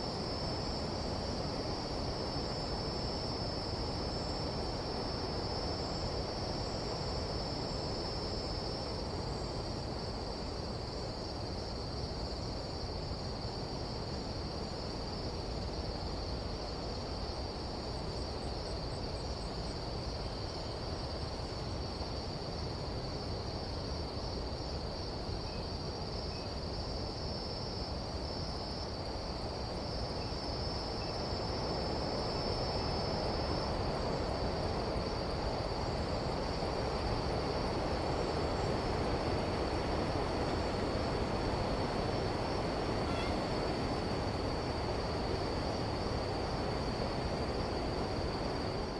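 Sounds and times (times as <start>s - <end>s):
insect chorus buzzing: 0.0s - 48.9s.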